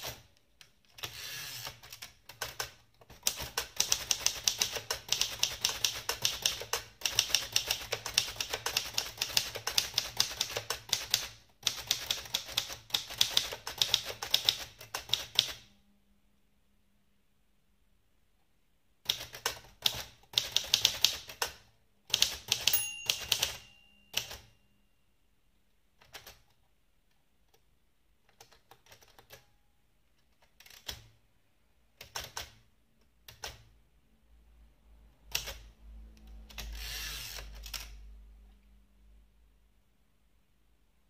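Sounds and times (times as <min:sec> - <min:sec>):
typewriter key strikes: 0:22.2 - 0:24.5
typewriter bell ringing: 0:22.6 - 0:24.8.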